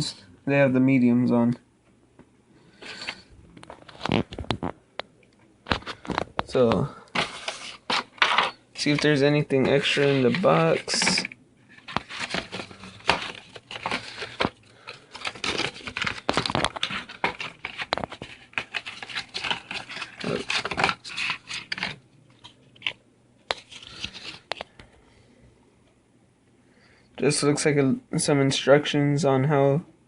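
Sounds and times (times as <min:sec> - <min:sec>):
paper packaging rustling: 0:02.7 - 0:04.8, 0:05.6 - 0:24.8.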